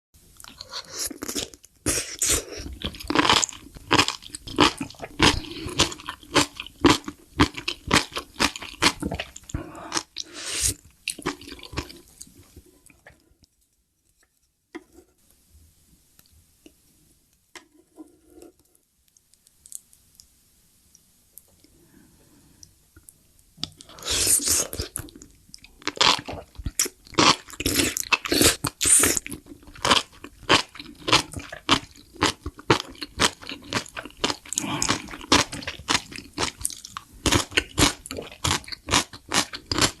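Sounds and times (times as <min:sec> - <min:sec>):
crunchy food chewing: 0:02.6 - 0:12.5, 0:23.6 - 0:40.0.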